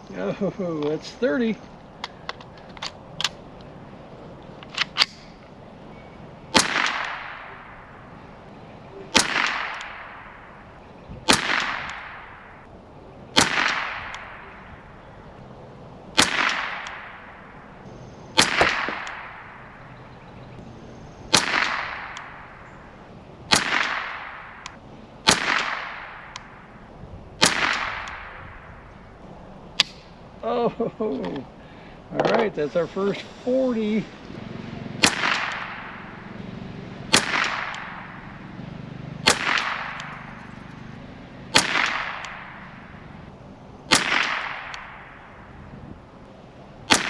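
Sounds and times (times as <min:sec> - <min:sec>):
rifle shots with echo: 0:06.5 - 0:08.2, 0:08.9 - 0:12.7, 0:13.3 - 0:15.1, 0:16.1 - 0:20.5, 0:21.3 - 0:29.2, 0:35.0 - 0:36.4, 0:37.1 - 0:43.2, 0:43.9 - 0:45.6.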